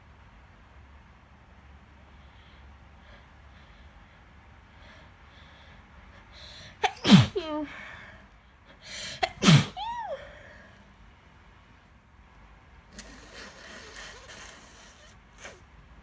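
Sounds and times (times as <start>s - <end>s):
woman sneezing: 6.8s - 7.8s, 9.0s - 10.4s.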